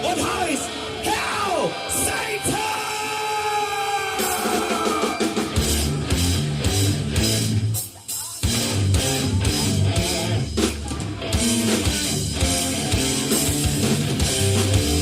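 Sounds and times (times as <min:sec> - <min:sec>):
heavy metal band playing: 0:00.0 - 0:15.0.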